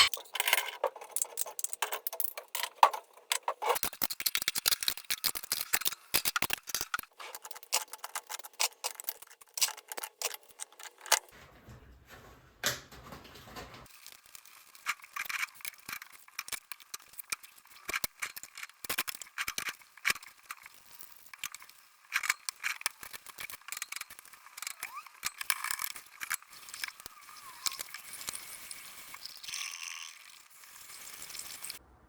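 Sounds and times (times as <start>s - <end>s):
small hard objects clattering: 0.0s - 21.8s.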